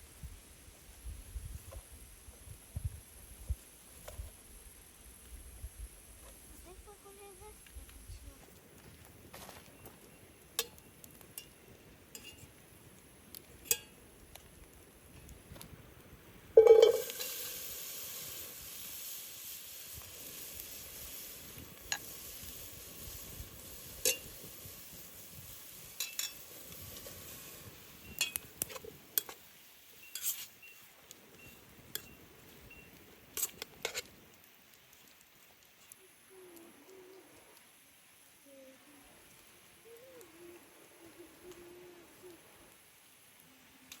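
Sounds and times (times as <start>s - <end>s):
food sizzling in hot pan: 16.5s - 34.6s.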